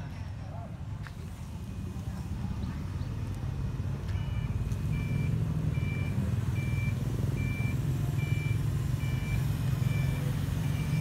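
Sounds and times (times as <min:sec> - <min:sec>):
vehicle engine running: 0:01.0 - 0:11.0
reversing alarm beeping: 0:04.1 - 0:11.0.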